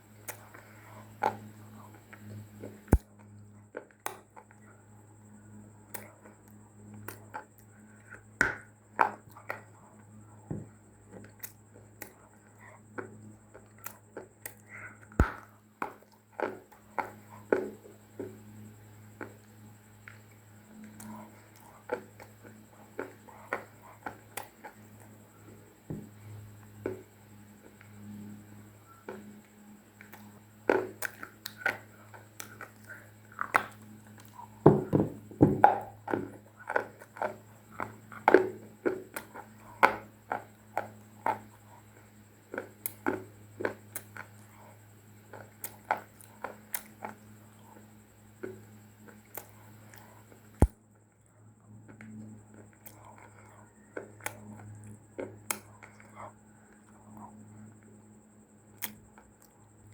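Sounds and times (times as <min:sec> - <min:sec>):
crunchy clay being chewed: 0:00.0 - 0:59.9
low electrical hum: 0:00.0 - 0:59.9.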